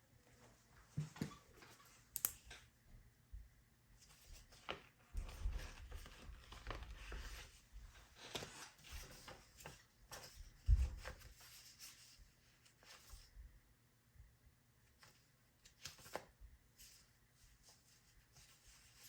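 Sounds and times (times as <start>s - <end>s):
paper rustling: 4.0s - 13.2s.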